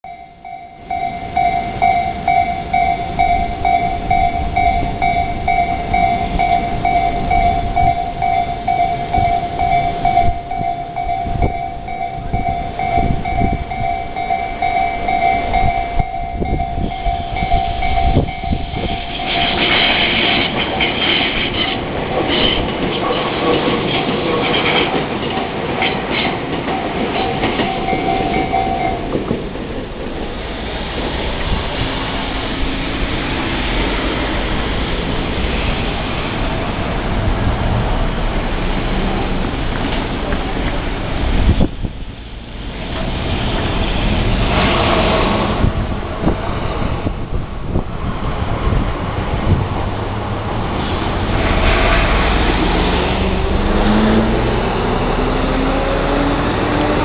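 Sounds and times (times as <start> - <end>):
level crossing warning bell ringing: 0.0 - 29.3
train rumble and clattering wheels: 0.1 - 57.0.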